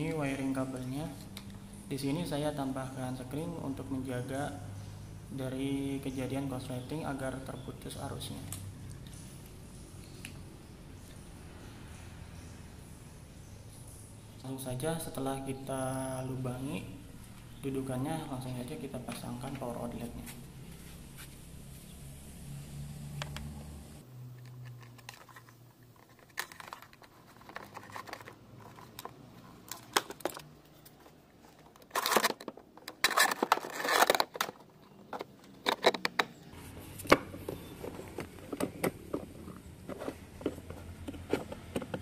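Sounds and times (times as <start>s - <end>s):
plastic parts clicking and tapping: 24.4s - 42.0s
plastic rustling and scraping: 24.4s - 42.0s.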